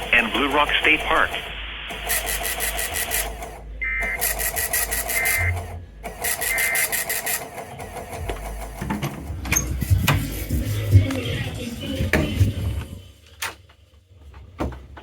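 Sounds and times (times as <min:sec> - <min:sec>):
electronic data tone bursts: 0:03.8 - 0:05.6, 0:06.2 - 0:07.4.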